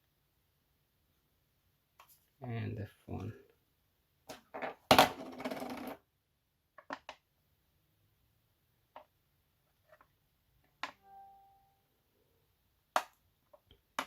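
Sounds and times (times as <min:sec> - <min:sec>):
short pitched tone: 0:11.0 - 0:11.8.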